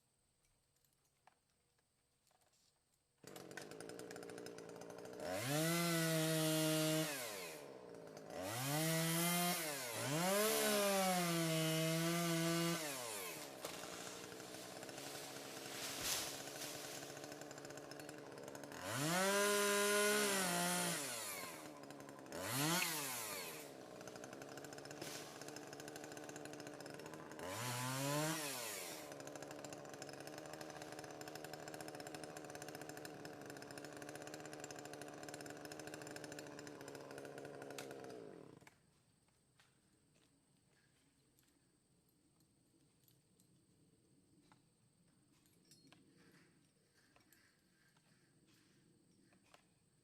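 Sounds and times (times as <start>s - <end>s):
chainsaw engine idling and revving: 3.2s - 38.8s.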